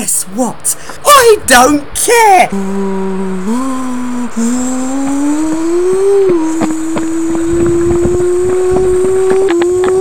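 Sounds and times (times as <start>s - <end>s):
bus engine whine: 2.5s - 10.0s.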